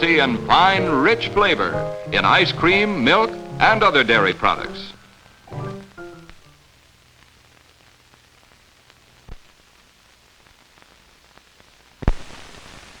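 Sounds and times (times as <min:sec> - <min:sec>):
recording hiss and low hum: 0:00.0 - 0:13.0
sharp pop: 0:12.0 - 0:12.3.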